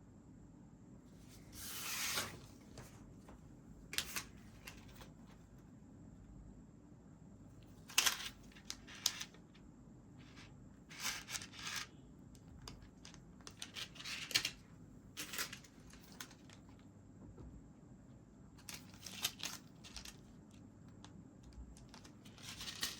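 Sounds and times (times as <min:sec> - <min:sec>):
packaging rustling and crinkling: 0:15.2 - 0:16.7, 0:18.6 - 0:20.4, 0:21.8 - 0:22.9.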